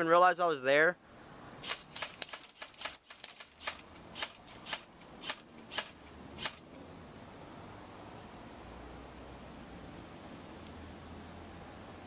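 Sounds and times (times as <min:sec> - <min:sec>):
faint hiss: 0:00.4 - 0:12.0
short sharp clicks: 0:01.6 - 0:06.6.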